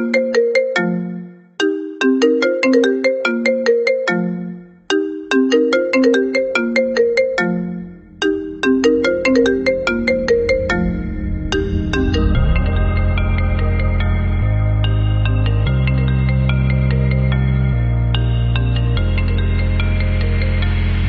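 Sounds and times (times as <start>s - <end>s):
plucked bell-like ringtone melody: 0.0s - 21.0s
low bass: 7.5s - 21.0s.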